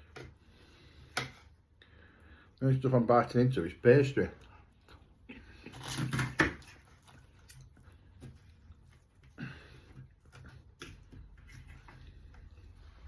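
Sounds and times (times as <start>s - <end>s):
man chewing flaky pastry: 4.4s - 12.9s.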